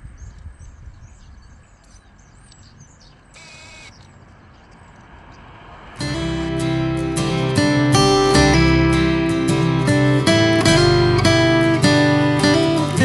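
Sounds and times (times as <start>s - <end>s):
small birds chirping: 0.0s - 5.7s.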